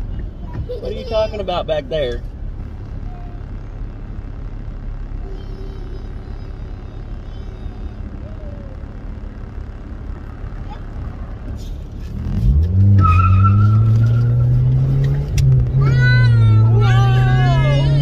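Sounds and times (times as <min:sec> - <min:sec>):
car engine revving: 0:08.1 - 0:18.0
brief high squeal: 0:13.0 - 0:14.3.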